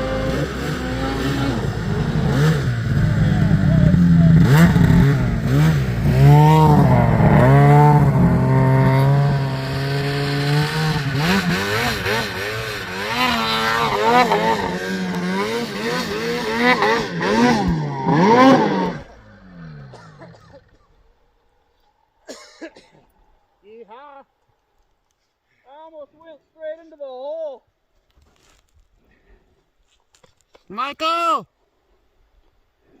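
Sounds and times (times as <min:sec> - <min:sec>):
snowmobile engine revving: 0:00.0 - 0:21.0.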